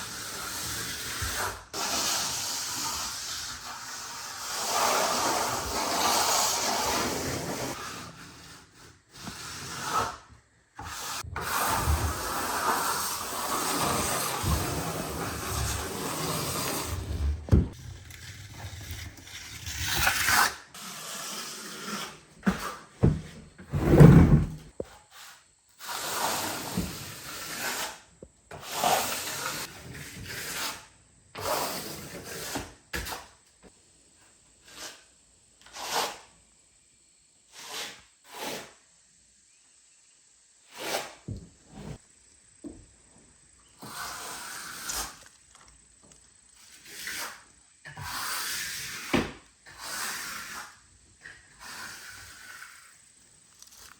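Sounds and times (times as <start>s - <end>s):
rubbing and scraping strokes: 10.8s - 22.9s.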